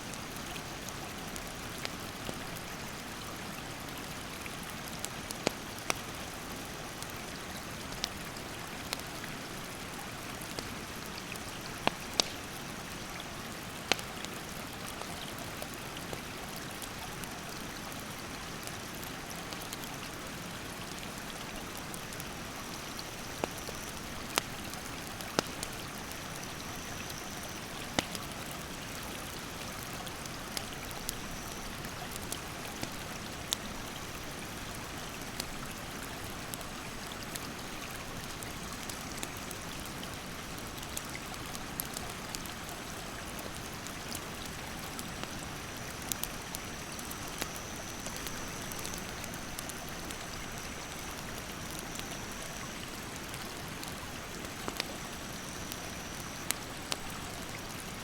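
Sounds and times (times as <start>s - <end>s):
campfire crackling: 0.1s - 58.0s
insect drone: 22.5s - 24.2s, 26.0s - 27.8s, 45.3s - 53.2s, 55.0s - 56.6s.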